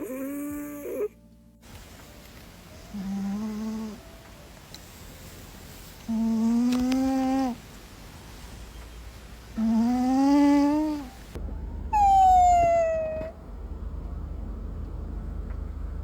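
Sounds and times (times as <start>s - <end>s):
cat whining call: 0.0s - 1.2s, 9.6s - 11.2s, 11.9s - 13.4s
cat snoring: 2.9s - 4.1s, 6.1s - 7.6s, 9.6s - 11.2s.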